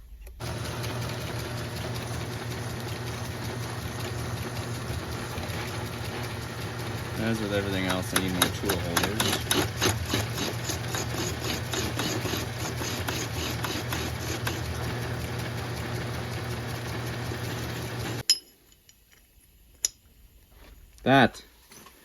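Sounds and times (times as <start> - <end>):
metal lathe motor hum: 0.4 - 18.2
rapid regular ticking: 5.9 - 15.4.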